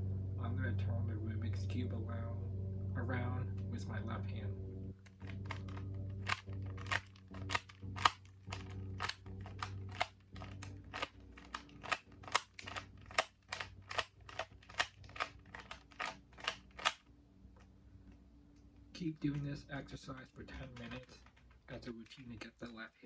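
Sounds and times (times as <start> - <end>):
puzzle cube clicking: 5.0 - 17.0, 20.5 - 22.6.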